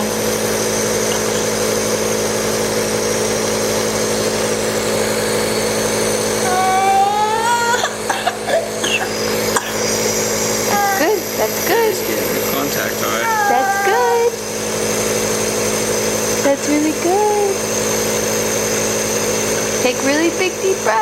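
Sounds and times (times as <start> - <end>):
mechanical hum: 0.0 - 21.0
child whining: 6.4 - 9.1, 10.6 - 11.5, 13.1 - 14.4.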